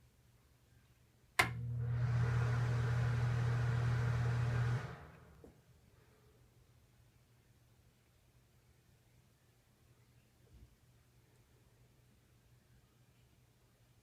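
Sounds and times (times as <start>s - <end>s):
fan switch click: 1.4s - 1.6s
exhaust fan humming: 1.4s - 5.5s.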